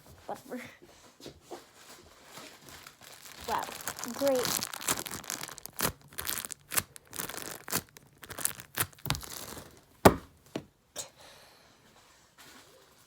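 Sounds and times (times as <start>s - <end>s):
plastic bags crinkling: 1.8s - 10.6s.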